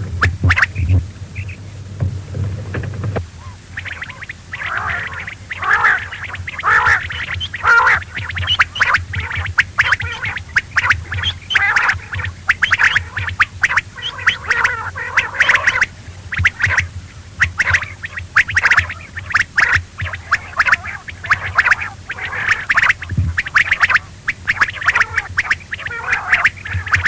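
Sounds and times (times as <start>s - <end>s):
quail chirping calls: 0.0s - 1.8s, 2.8s - 27.0s
steady low hum: 0.0s - 27.0s.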